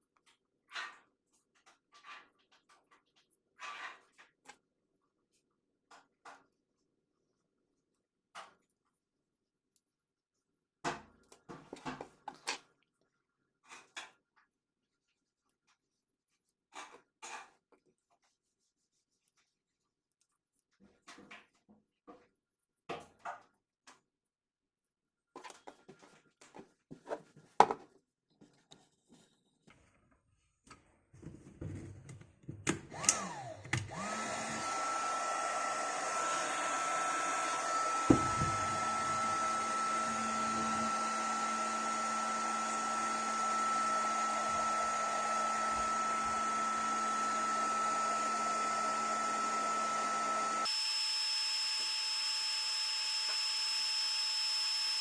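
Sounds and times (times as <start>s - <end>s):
hot-air blower hissing and whining: 32.9s - 55.0s.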